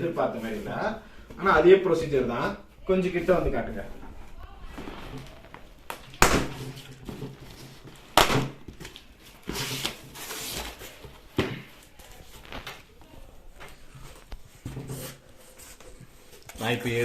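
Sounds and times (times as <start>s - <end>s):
package rustling: 4.2s - 14.4s.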